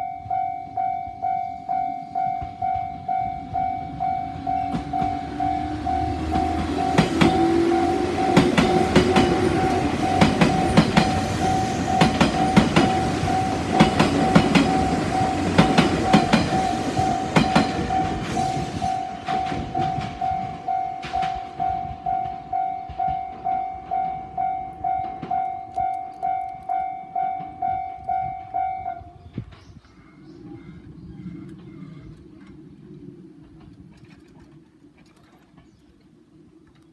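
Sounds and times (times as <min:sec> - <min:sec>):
level crossing alarm ringing: 0:00.0 - 0:29.2
electric train passing: 0:00.0 - 0:29.6, 0:30.2 - 0:34.0
train wheels clacking over rail joints: 0:04.3 - 0:26.6.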